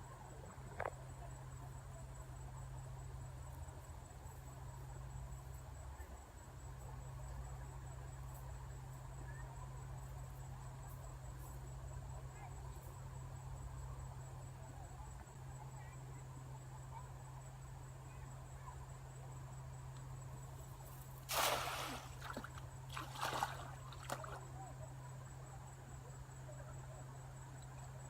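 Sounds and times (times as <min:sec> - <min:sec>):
water splashing and sloshing: 0:21.2 - 0:24.4.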